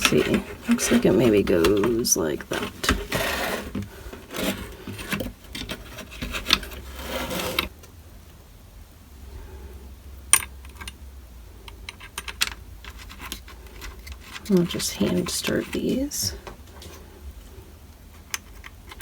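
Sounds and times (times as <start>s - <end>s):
plastic parts rubbing and scraping: 0.0s - 7.8s, 11.9s - 19.0s
plastic parts clicking: 18.2s - 19.0s.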